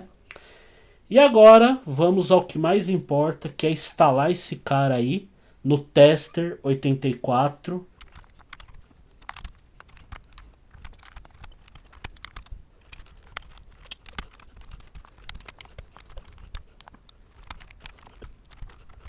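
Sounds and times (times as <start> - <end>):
plastic keycaps clicking and clacking: 7.9 - 19.0.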